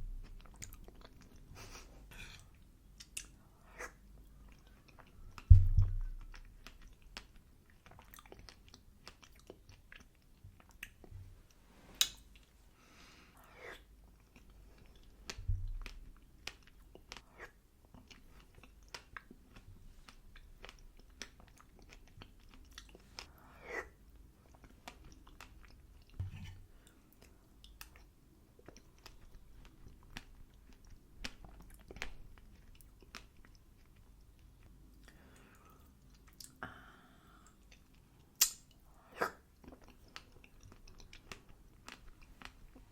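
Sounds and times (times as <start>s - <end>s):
person chewing close up: 0.0s - 1.5s, 2.1s - 12.5s, 13.4s - 36.6s, 37.4s - 42.9s
wet mouth clicks: 3.0s - 10.1s, 37.4s - 42.5s
low thumps: 5.5s - 6.3s.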